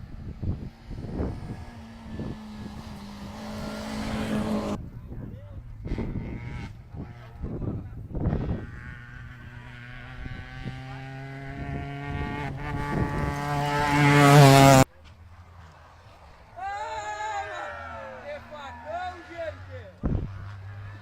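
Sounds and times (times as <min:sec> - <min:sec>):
rally car engine high revs: 0:00.3 - 0:04.8, 0:08.2 - 0:14.8.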